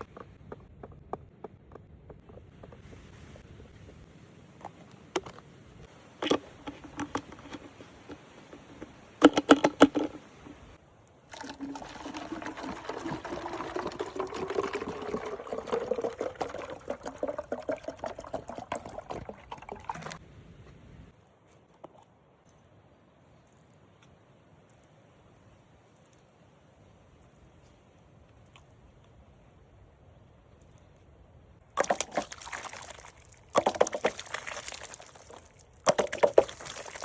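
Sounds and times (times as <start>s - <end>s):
knocks and clicks of handling: 6.2s - 10.6s
liquid pouring into container: 11.3s - 20.2s, 31.8s - 37.0s.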